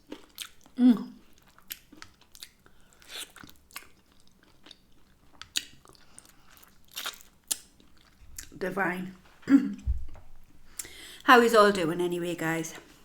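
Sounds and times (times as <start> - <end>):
chewing crunchy chicken wings: 0.0 - 8.6.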